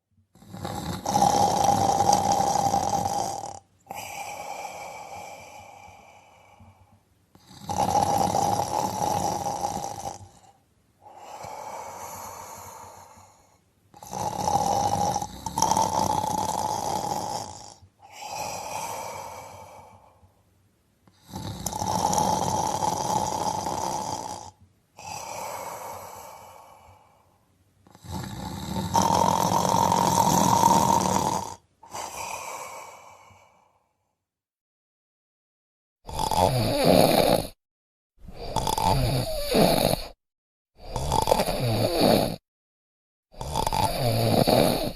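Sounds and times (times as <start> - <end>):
person snoring: 0.3 - 20.2, 21.1 - 34.1, 36.0 - 37.6, 38.2 - 40.2, 40.8 - 42.4, 43.3 - 44.9
soft breath: 3.8 - 7.5, 10.2 - 13.7, 18.0 - 20.4, 25.0 - 27.5, 31.8 - 34.2.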